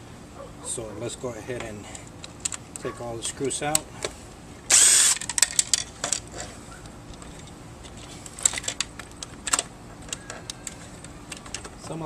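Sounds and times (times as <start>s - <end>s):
small parts clicking and tapping: 8.2s - 11.8s.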